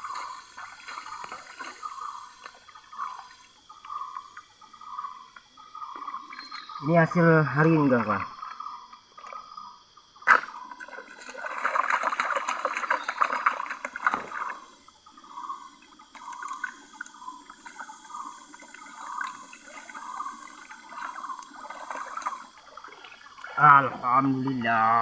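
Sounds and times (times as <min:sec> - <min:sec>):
water sloshing in a pan: 0:00.0 - 0:03.6, 0:10.3 - 0:15.2, 0:15.8 - 0:24.3.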